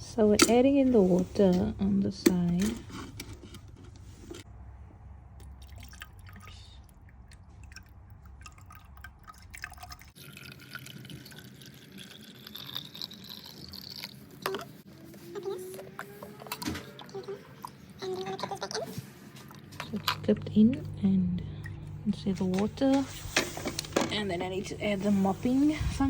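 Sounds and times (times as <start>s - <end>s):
water trickling into plastic tank: 5.4s - 14.7s.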